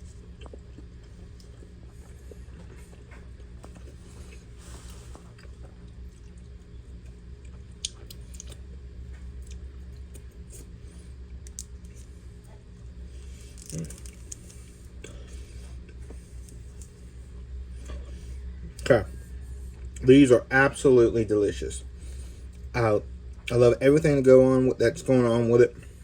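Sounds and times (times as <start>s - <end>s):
person chewing: 0.0s - 18.5s
low hum: 0.0s - 26.0s.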